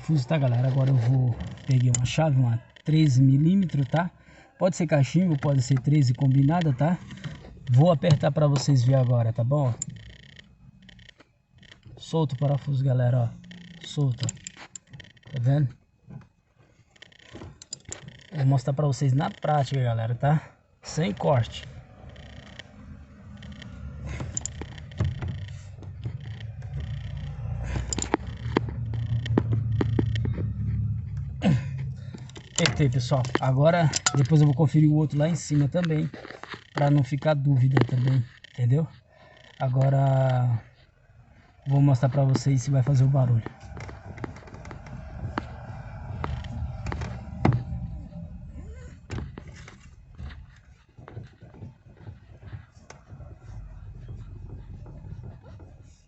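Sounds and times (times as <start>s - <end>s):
wrench metallic clicks and knocks: 13.5s - 15.4s, 17.0s - 18.4s, 23.3s - 31.3s, 32.1s - 34.7s
low steady rumble: 20.8s - 35.8s, 41.0s - 51.3s
low steady hum: 20.8s - 35.9s
steering light clicks and knocks: 21.0s - 38.7s, 41.6s - 56.0s.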